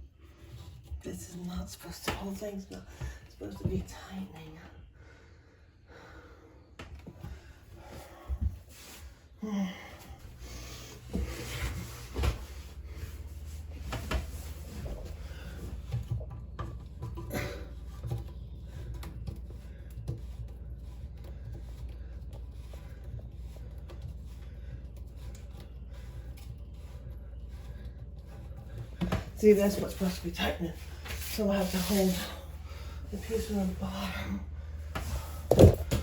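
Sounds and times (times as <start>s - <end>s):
knocks and rubbing of plastic fittings: 11.1s - 30.1s.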